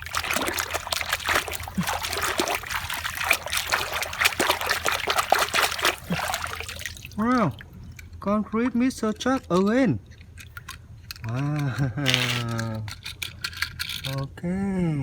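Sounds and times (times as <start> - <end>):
water trickling and splashing: 0.0 - 8.0.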